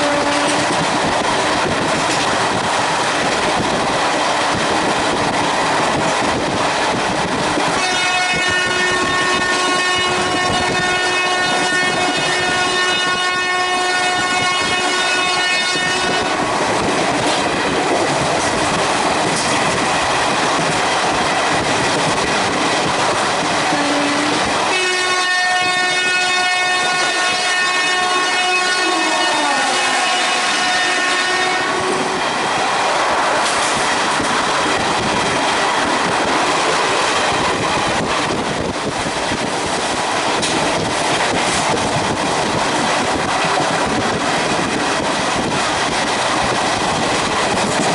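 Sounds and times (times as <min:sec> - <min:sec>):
locomotive air horn blast: 0:00.0 - 0:00.7, 0:07.8 - 0:16.4, 0:23.7 - 0:32.0
train running on rails: 0:00.0 - 0:47.9.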